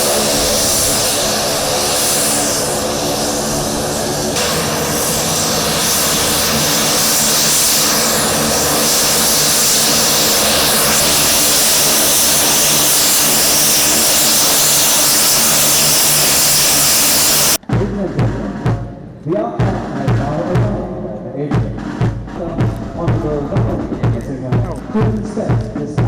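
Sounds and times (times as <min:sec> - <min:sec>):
high engine hiss: 0:00.0 - 0:17.6
turboprop engines droning: 0:00.0 - 0:26.0.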